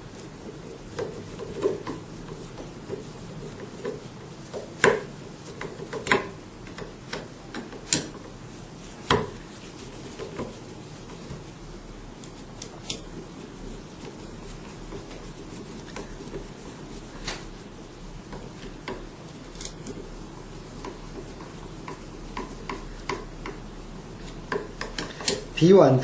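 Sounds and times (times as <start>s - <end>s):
hand tools clicking and scraping: 24.2s - 25.5s.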